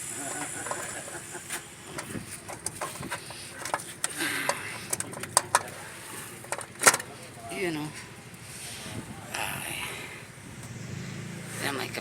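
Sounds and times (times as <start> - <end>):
hand tools and metal parts clicking: 0.3 - 7.2.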